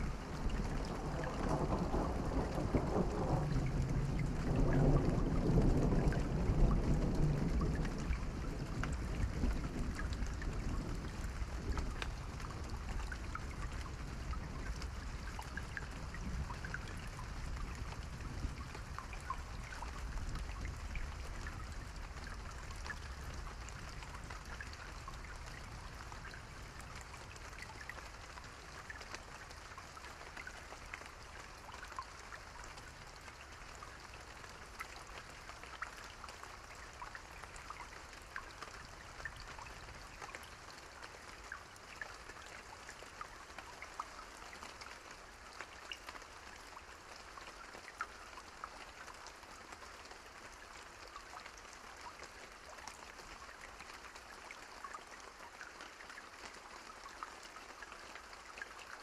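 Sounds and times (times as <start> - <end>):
low rumble of thunder: 0.0 - 28.0
rain drops ticking: 0.0 - 59.0.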